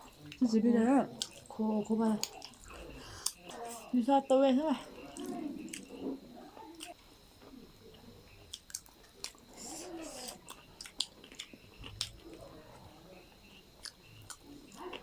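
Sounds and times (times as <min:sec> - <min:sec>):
chewing and biting food: 0:01.1 - 0:03.8, 0:05.0 - 0:07.6, 0:08.3 - 0:13.0, 0:13.6 - 0:15.0.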